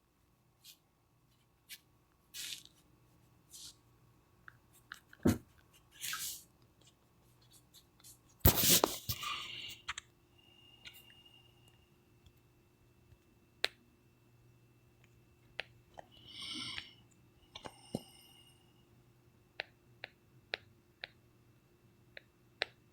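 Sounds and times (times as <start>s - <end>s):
faint steady hum: 0.0s - 22.9s
rustling noises: 0.6s - 3.8s, 4.7s - 9.3s.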